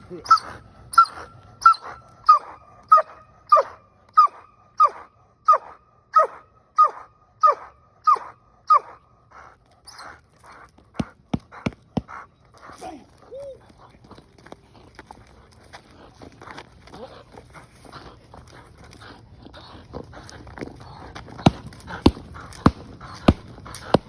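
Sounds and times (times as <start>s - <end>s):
dog whining: 0.2s - 9.0s
sharp knocks: 21.5s - 24.0s.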